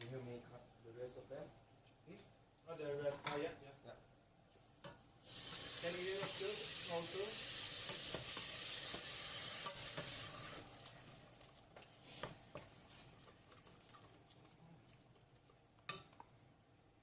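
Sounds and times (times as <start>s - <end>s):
food sizzling in hot oil: 5.2s - 12.4s.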